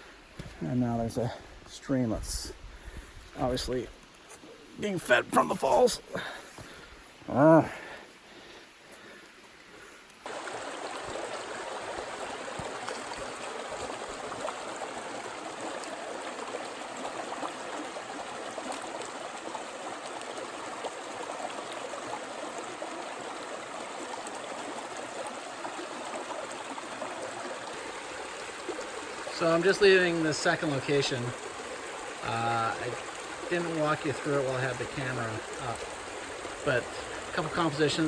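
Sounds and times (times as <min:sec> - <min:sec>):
water running over rocks: 0:00.0 - 0:38.0.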